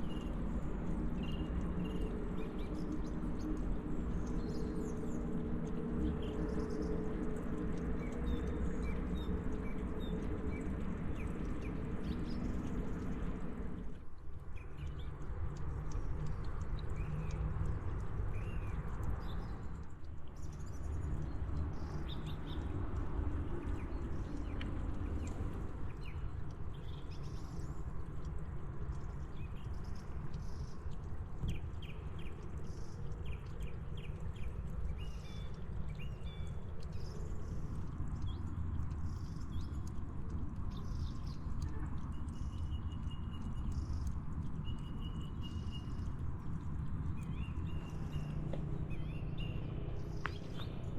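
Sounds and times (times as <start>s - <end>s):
low outdoor rumble: 0.0s - 50.9s
small birds chirping: 29.0s - 50.9s.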